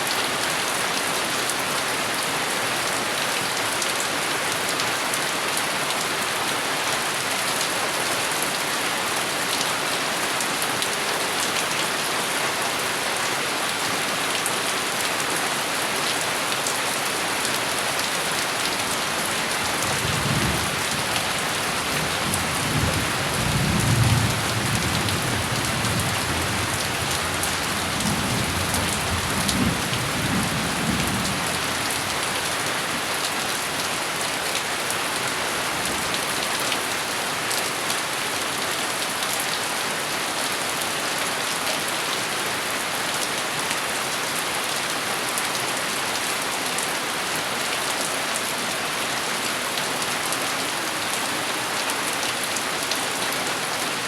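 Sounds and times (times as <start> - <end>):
heavy rain pattering: 0.1 - 40.1.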